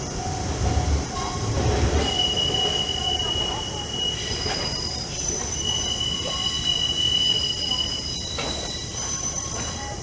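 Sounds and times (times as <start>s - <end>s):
train wheels squealing on rails: 0.0s - 10.0s.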